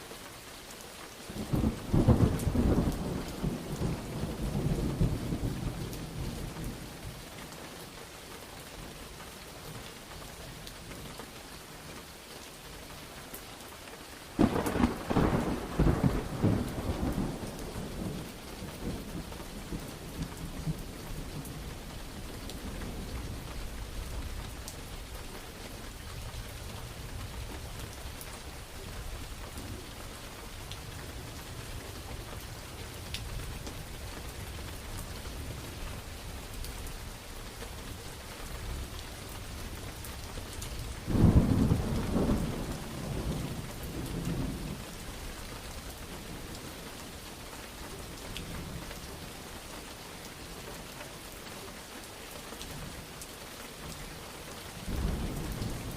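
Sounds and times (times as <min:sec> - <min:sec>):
steady rain falling: 0:00.0 - 0:55.9
low rumble of thunder: 0:01.3 - 0:07.3, 0:14.4 - 0:46.8, 0:54.8 - 0:55.9
loud thunderclap: 0:14.4 - 0:18.2, 0:41.1 - 0:44.8.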